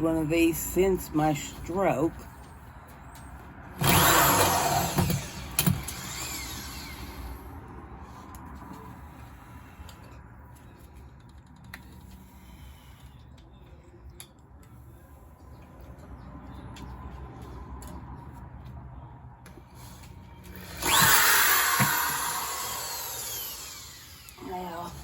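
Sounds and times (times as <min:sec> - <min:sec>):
power drill whirring: 0:03.8 - 0:07.5, 0:20.4 - 0:25.0.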